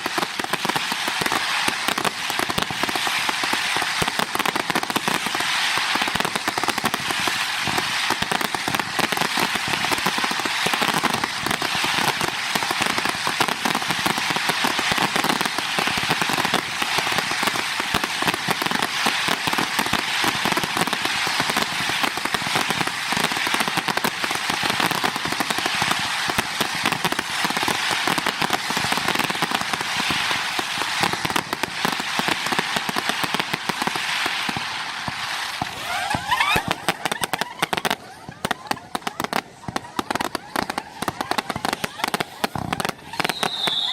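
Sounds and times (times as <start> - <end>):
fireworks crackling: 0.0 - 43.9.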